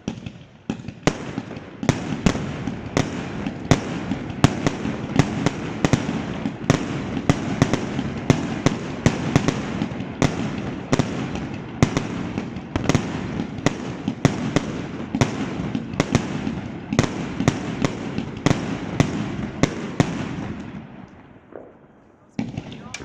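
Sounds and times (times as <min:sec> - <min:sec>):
fireworks bangs: 0:00.0 - 0:23.0
fireworks crackle: 0:00.0 - 0:23.0.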